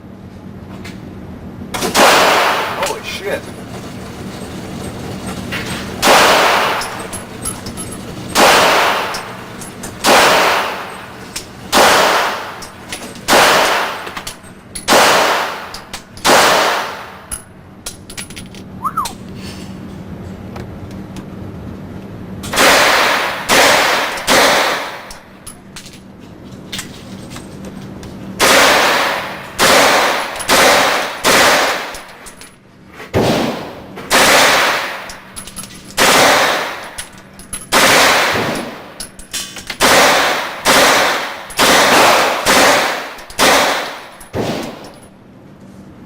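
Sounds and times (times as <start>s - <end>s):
pistol shots: 1.8s - 3.1s, 6.0s - 7.5s, 8.3s - 14.3s, 14.9s - 17.3s, 22.5s - 25.2s, 28.4s - 32.1s, 33.2s - 35.2s, 36.0s - 37.0s, 37.7s - 39.0s, 39.8s - 44.9s.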